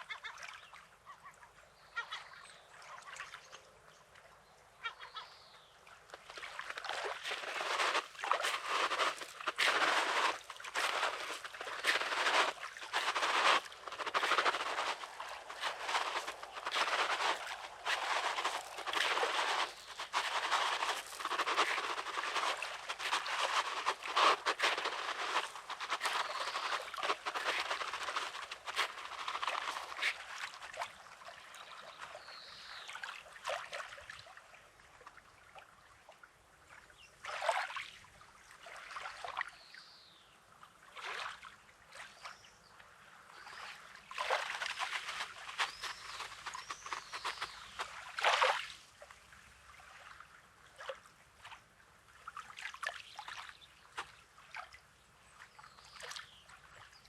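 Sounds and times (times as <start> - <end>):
water trickling through stones: 6.0 - 33.8, 43.4 - 49.7, 52.3 - 54.9
waves washing over pebbles: 7.0 - 30.7.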